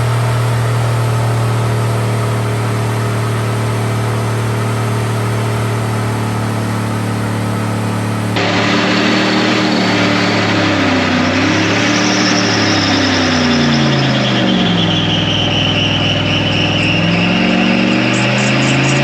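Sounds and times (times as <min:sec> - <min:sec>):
truck engine revving hard: 0:00.0 - 0:19.0
tires squealing: 0:08.4 - 0:19.0.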